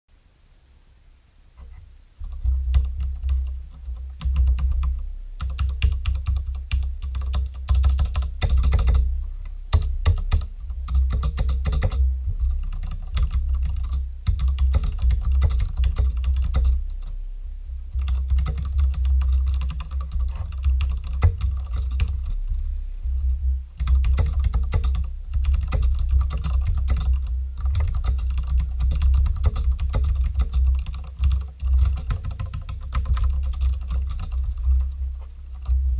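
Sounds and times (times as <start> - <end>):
mechanical keyboard typing: 2.2 - 9.0, 9.7 - 16.8, 18.0 - 22.3, 23.8 - 35.8.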